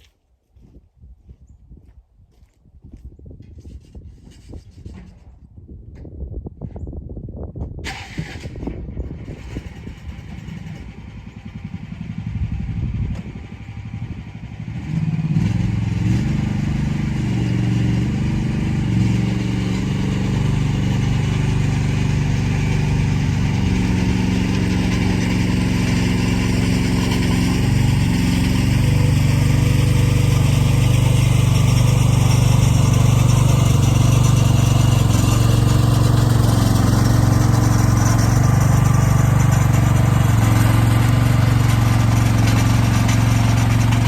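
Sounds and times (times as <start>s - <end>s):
heavy equipment diesel engine revving: 9.3s - 44.0s.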